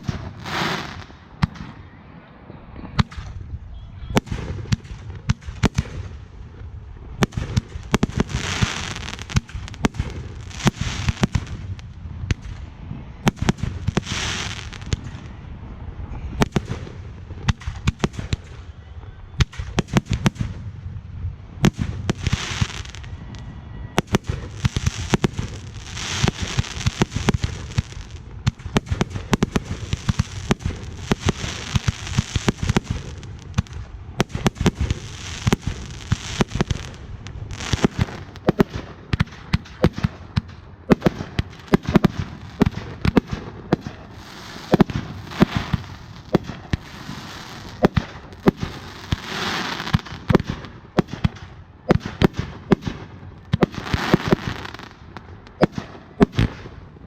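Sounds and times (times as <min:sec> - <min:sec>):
fireworks hissing: 0:00.0 - 0:01.2, 0:07.7 - 0:11.6, 0:13.3 - 0:15.2, 0:22.0 - 0:38.7, 0:43.8 - 0:50.5
fireworks popping and banging: 0:07.2 - 0:15.4, 0:21.6 - 0:56.8.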